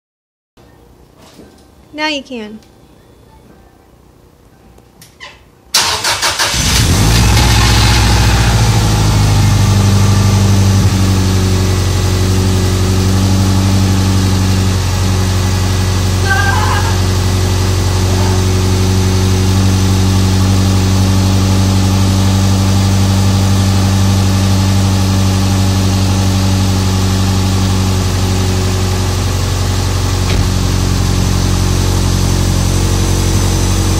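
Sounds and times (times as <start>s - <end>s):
engine cranking and idling: 5.7s - 16.2s.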